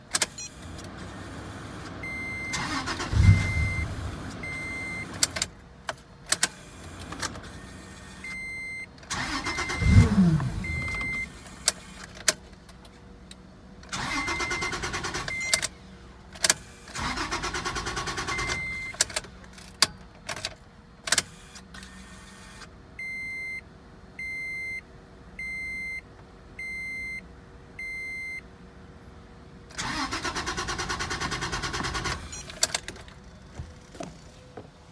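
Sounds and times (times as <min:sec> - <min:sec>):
car engine cranking: 0:00.1 - 0:05.6, 0:09.0 - 0:12.9, 0:13.9 - 0:21.3, 0:29.7 - 0:34.7
even beeps: 0:02.1 - 0:05.1, 0:09.4 - 0:11.3
dashboard warning chime: 0:09.4 - 0:11.3.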